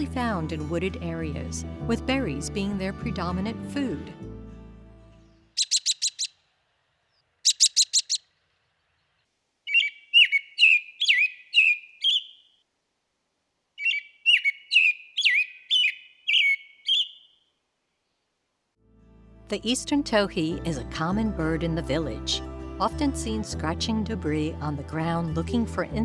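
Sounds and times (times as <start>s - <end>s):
robin whistled caroling song: 5.3s - 6.4s, 7.4s - 8.3s, 9.7s - 12.6s, 13.8s - 17.4s.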